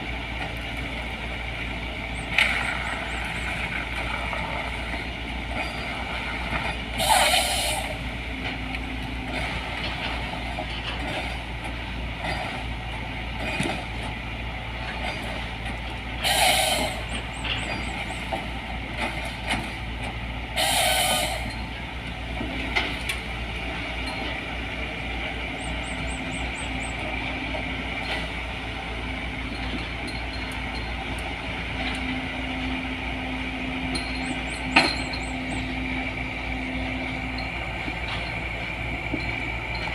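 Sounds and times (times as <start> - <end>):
excavator engine running: 0.0 - 39.9.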